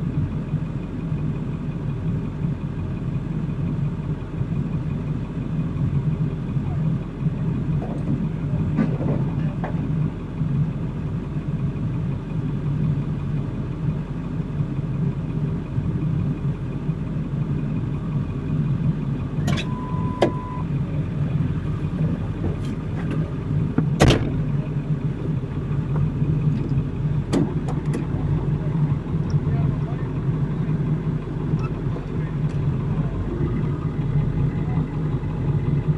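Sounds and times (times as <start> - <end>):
vehicle engine running: 0.0 - 35.9
short beep: 19.4 - 20.7.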